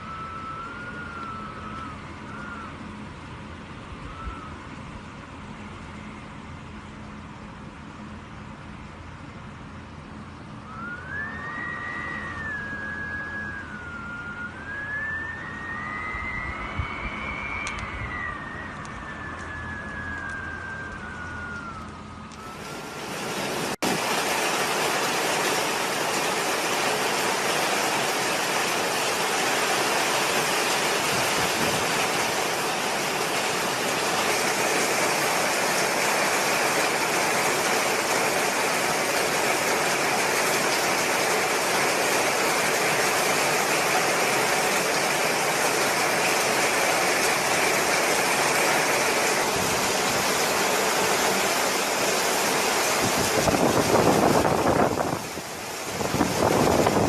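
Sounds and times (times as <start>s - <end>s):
falling siren-like tone: 0.0s - 4.9s, 10.6s - 23.8s
driving rain: 0.0s - 57.0s
storm wind: 10.7s - 57.0s.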